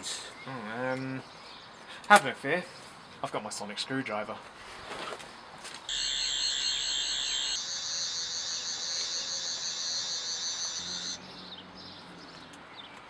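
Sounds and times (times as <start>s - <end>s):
toy warbling electronic whine: 5.9s - 11.2s.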